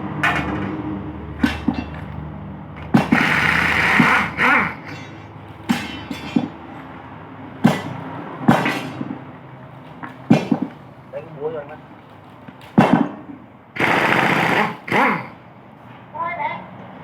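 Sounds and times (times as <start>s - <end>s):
metal knocks and clanks: 0.1s - 2.2s, 4.0s - 6.9s, 7.6s - 9.3s, 10.0s - 10.8s.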